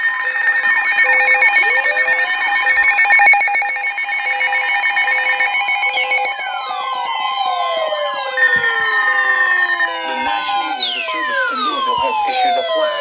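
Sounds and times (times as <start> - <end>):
electronic alert beeps: 0.0 - 6.4, 8.4 - 13.0
fast warbling trill: 0.0 - 6.8, 8.4 - 13.0
low beeping tone: 0.0 - 7.2, 8.4 - 13.0
falling siren-like sweeps: 0.0 - 13.0.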